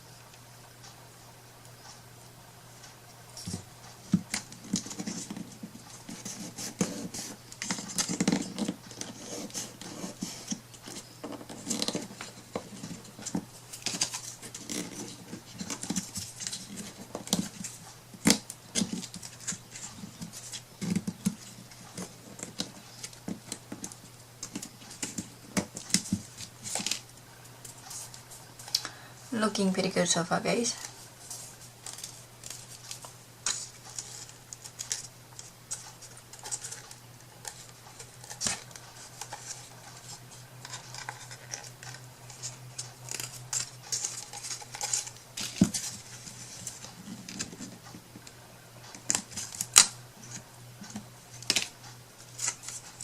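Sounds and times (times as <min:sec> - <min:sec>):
steady low hum: 0:00.0 - 0:53.0.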